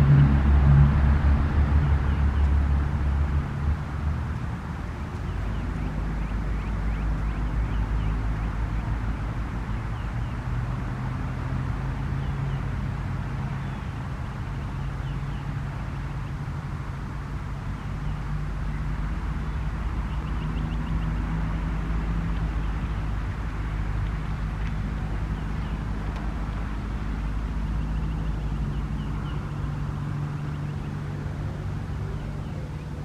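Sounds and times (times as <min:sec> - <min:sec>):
faint bird chirps: 0:04.4 - 0:08.8.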